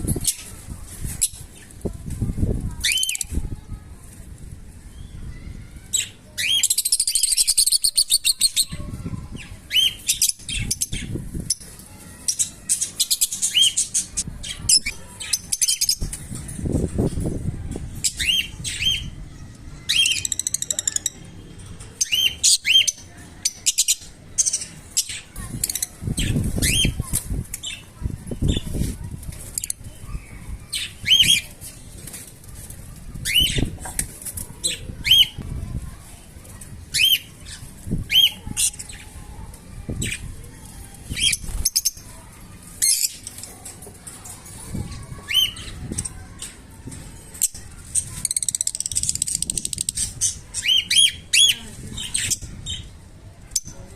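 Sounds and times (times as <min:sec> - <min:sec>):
birds chirping: 0:04.7 - 0:53.9
birds rustling and thumping: 0:24.3 - 0:50.8.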